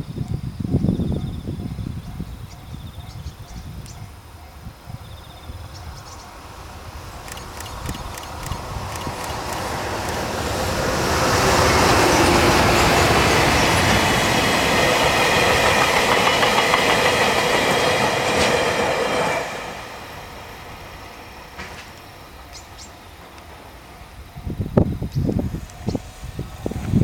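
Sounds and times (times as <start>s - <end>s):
train metallic whine: 0.7s - 27.0s
wheels clattering over rail joints: 7.2s - 11.0s, 21.5s - 23.6s.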